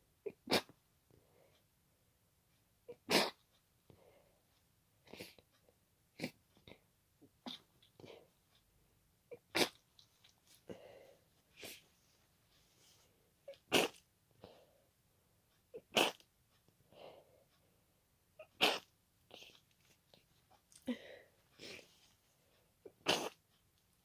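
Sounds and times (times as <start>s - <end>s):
person sneezing: 3.0s - 3.4s, 13.7s - 14.0s, 15.9s - 16.2s, 18.5s - 18.9s, 23.0s - 23.4s
breathy sounds: 10.5s - 11.9s, 20.7s - 22.7s.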